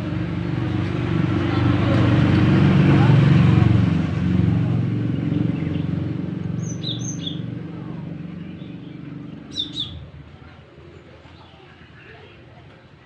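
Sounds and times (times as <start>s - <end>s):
vehicle engine rumbling: 0.0s - 11.6s
bird chirping: 5.0s - 10.0s.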